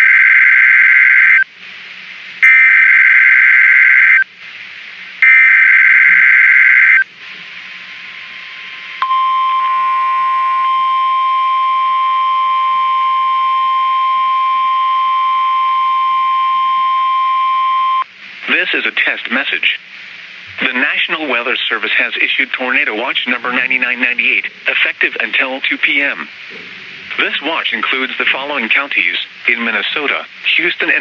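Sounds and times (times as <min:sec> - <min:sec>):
steady loud warning alarm tone: 0:00.0 - 0:01.5, 0:02.4 - 0:04.3, 0:05.2 - 0:07.1, 0:08.2 - 0:18.0.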